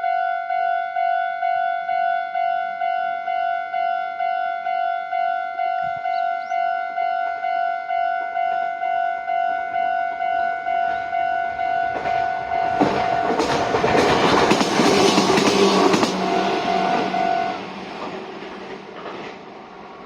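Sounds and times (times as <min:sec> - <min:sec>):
level crossing alarm ringing: 0:00.0 - 0:18.5
train rumble: 0:10.9 - 0:20.0
wheels clicking over rail joints: 0:10.9 - 0:20.0.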